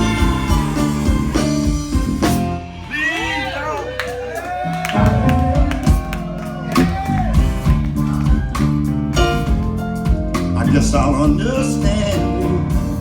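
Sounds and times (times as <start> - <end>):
steady drum beat: 0.0 - 3.1, 5.0 - 13.0
bass: 0.0 - 13.0.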